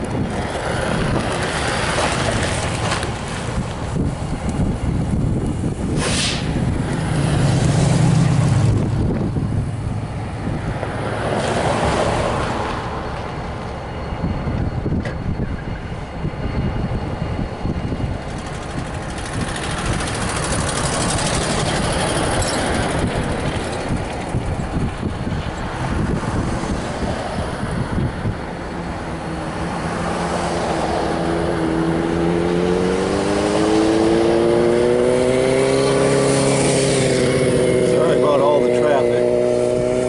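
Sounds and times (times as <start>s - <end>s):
vehicle noise rumble: 0.0s - 40.0s
wind buffeting microphone: 0.0s - 40.0s
engine revving up: 31.2s - 40.0s.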